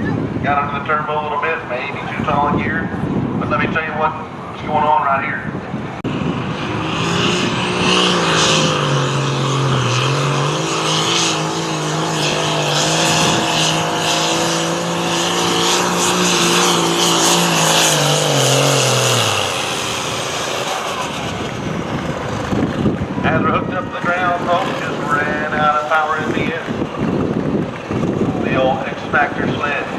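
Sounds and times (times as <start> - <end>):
tractor engine revving hard: 6.0 - 29.9.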